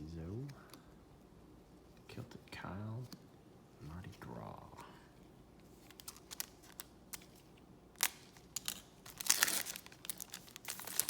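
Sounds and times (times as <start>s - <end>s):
card crinkling rustle: 5.6s - 11.0s.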